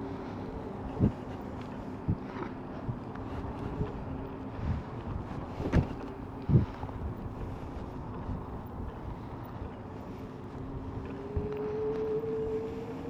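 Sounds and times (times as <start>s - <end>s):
wind buffeting microphone: 0.1s - 9.8s.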